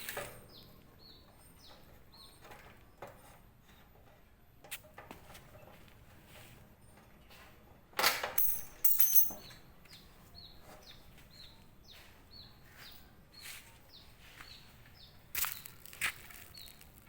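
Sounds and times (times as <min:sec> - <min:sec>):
bird chirping: 0:09.3 - 0:17.0.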